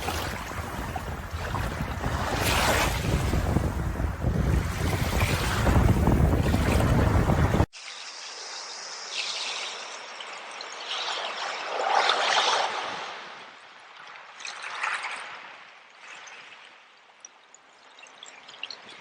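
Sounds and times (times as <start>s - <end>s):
loud surf: 0.0s - 7.7s
water trickling: 0.0s - 8.2s
wind: 0.0s - 19.0s.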